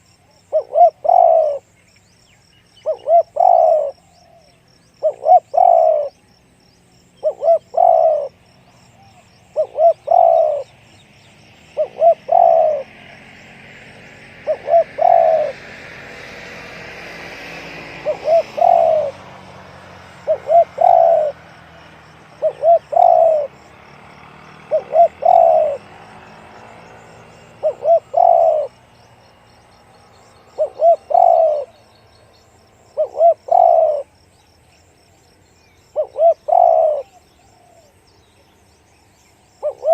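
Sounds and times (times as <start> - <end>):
dove cooing: 0.0 - 1.7, 2.8 - 6.2, 7.2 - 8.4, 9.0 - 10.8, 11.7 - 13.6, 14.3 - 16.5, 17.2 - 23.6, 24.2 - 28.9, 30.4 - 31.9, 32.9 - 34.2, 35.9 - 37.9, 39.6 - 39.9.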